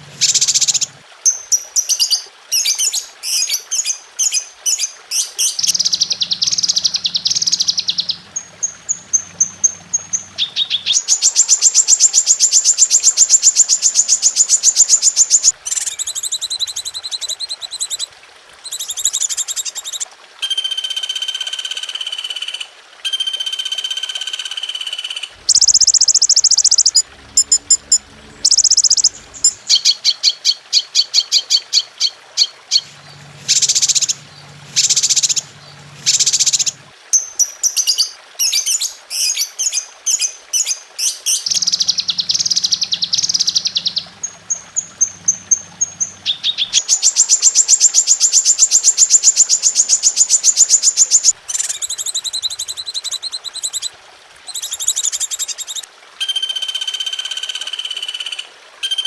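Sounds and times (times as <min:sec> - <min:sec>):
songbirds singing: 0:00.0 - 0:18.0, 0:25.2 - 0:53.9.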